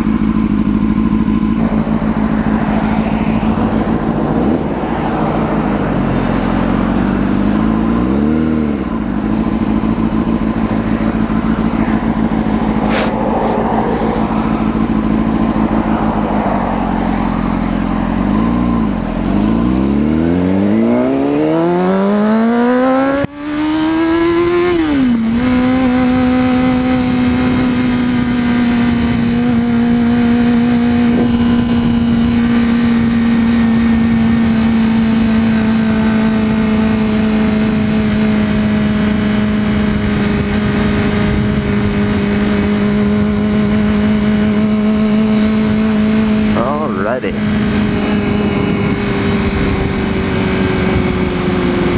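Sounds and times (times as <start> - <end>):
motorcycle engine revving: 0.0 - 51.9
wind noise: 1.2 - 7.6, 22.8 - 46.5, 47.3 - 51.9.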